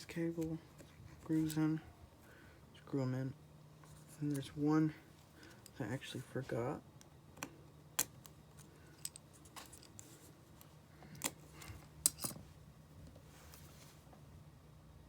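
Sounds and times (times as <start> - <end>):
faint steady hum: 0.0 - 15.0
screwdriver and small parts clicking: 7.4 - 10.0, 11.2 - 12.4.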